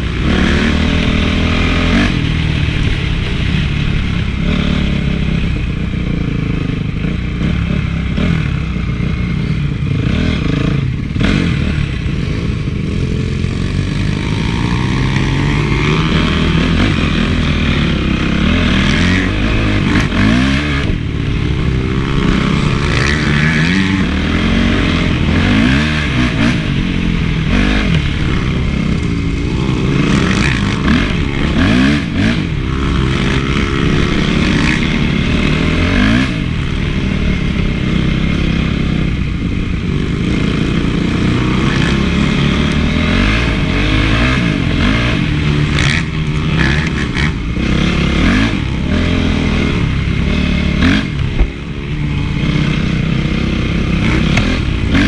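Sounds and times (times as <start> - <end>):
motorbike engine revving: 0.0 - 55.0.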